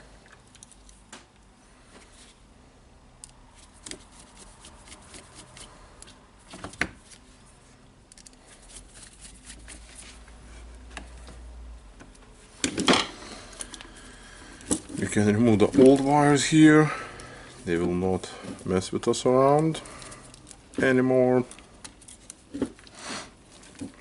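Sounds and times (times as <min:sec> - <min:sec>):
hand tools and wires clicking: 0:08.1 - 0:09.6, 0:12.0 - 0:16.4, 0:19.5 - 0:24.0.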